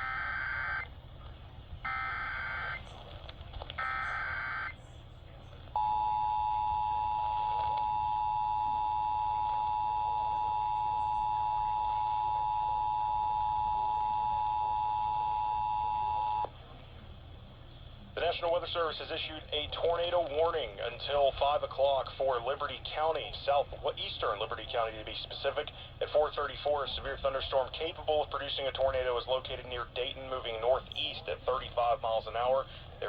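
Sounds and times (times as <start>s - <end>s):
two-tone attention signal: 5.8s - 16.5s.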